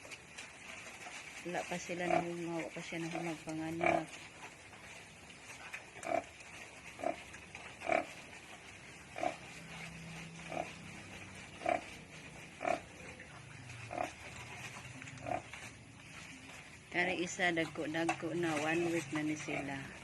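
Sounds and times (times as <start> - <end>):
pig grunting: 1.6 - 4.6, 5.6 - 15.7.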